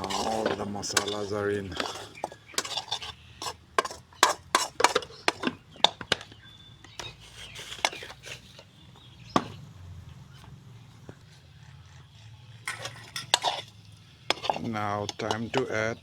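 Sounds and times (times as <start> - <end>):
spoon scraping in cooking pot: 0.0 - 9.2, 11.1 - 16.0.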